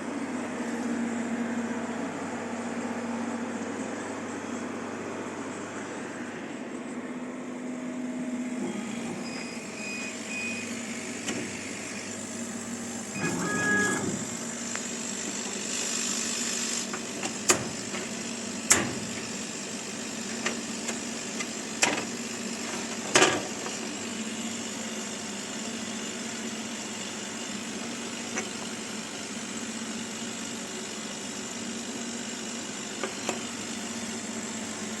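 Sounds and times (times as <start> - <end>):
hum of fans and pumps: 0.0 - 35.0
brief tone: 8.6 - 11.0, 13.1 - 14.3.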